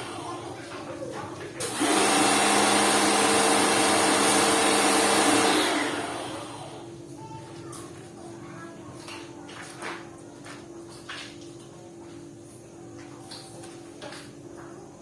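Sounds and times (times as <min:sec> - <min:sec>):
pressure washer spraying water: 0:01.6 - 0:06.8.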